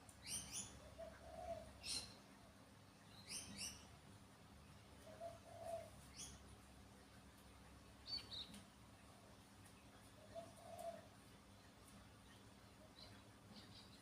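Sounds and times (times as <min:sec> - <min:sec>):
faint bird chirps: 0:03.0 - 0:03.9, 0:08.0 - 0:14.0.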